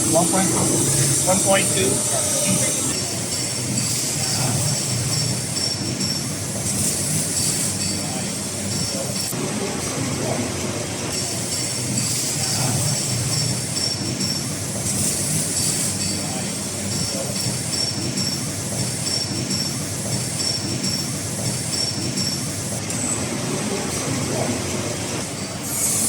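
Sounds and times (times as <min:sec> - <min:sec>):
high pulsing whine: 0:00.0 - 0:03.6
steady mechanical noise: 0:00.0 - 0:26.0.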